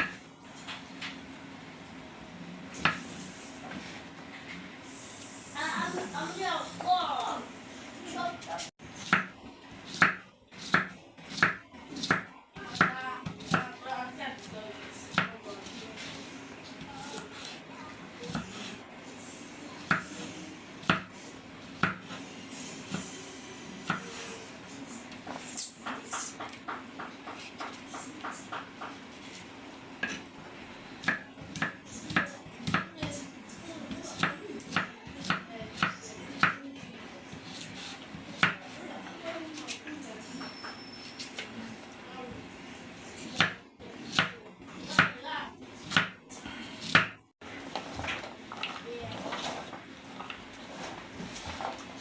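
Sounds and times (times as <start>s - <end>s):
knife chopping vegetables: 8.5s - 16.2s, 18.2s - 18.8s, 19.8s - 22.2s, 23.8s - 24.3s, 25.3s - 30.3s, 31.0s - 36.6s, 37.3s - 39.9s, 43.2s - 48.3s
knife chopping on cutting board: 9.9s - 13.7s, 37.3s - 38.7s, 43.3s - 45.2s, 46.8s - 47.2s.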